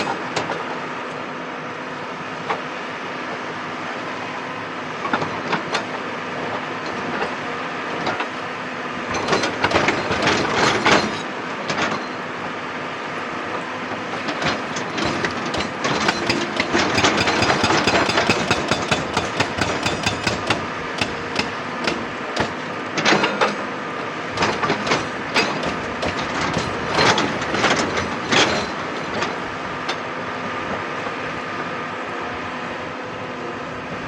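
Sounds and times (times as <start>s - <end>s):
excavator engine running: 9.1s - 12.2s, 13.9s - 29.8s
metallic knocks and clanks: 9.2s - 11.3s, 14.5s - 23.6s, 24.4s - 28.9s.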